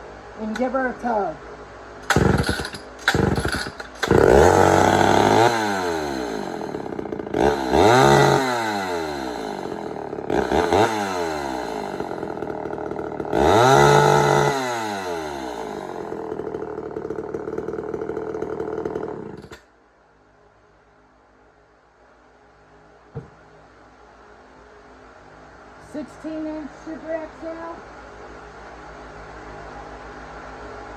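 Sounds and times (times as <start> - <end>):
chainsaw revving and idling: 2.0 - 19.6.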